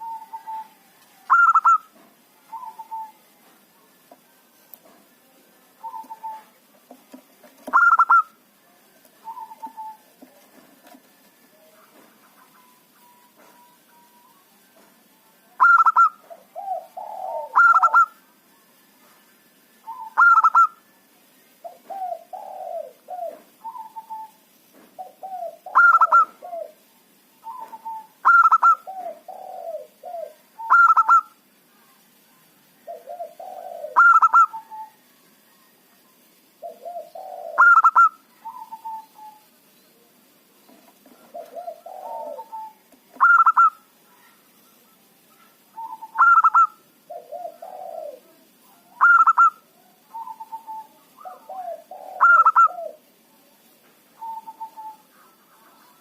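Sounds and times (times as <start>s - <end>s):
dove cooing: 0.0s - 3.2s, 5.8s - 6.6s, 7.6s - 8.4s, 9.2s - 10.2s, 15.6s - 18.2s, 19.8s - 20.8s, 21.6s - 24.4s, 25.0s - 31.4s, 32.9s - 35.0s, 36.6s - 39.5s, 41.1s - 44.3s, 45.7s - 53.1s, 54.2s - 55.5s.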